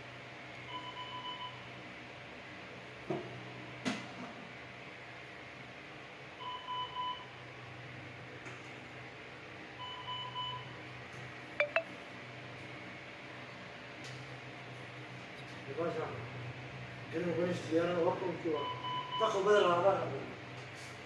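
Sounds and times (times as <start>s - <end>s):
monitor beeping: 11.6s - 11.8s
quick sharp tones: 11.6s - 11.8s.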